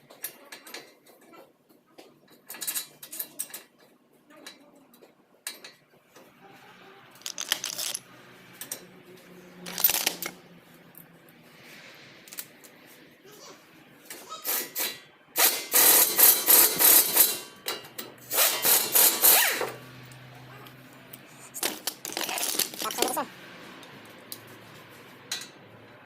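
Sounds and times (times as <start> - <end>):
metal tools clinking: 7.2 - 8.0, 9.7 - 10.4, 21.2 - 23.3.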